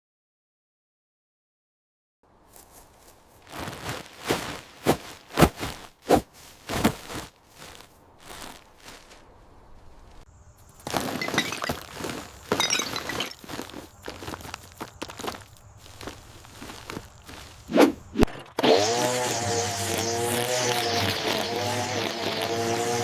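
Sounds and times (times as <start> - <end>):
debris rattling with glass clinking: 10.9 - 13.7.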